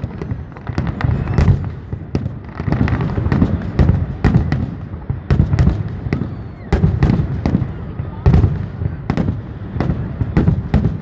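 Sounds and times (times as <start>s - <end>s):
low rolling rumble: 0.0s - 4.8s
fireworks bursting: 0.0s - 11.0s.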